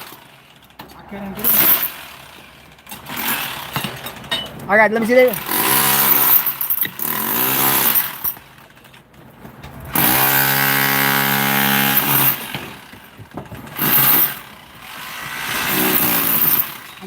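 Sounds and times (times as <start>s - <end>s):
electric power tool running: 13.7s - 17.0s.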